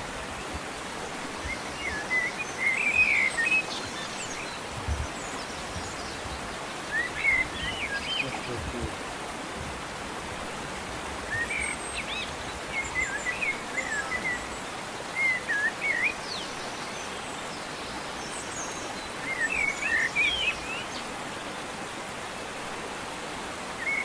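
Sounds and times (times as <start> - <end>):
small birds chirping: 0.0 - 9.0
mountain stream rushing: 0.0 - 24.0.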